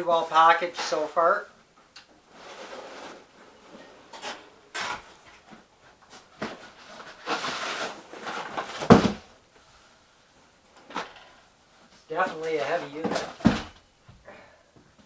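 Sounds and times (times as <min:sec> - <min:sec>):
cardboard box rustling: 0:02.3 - 0:09.3.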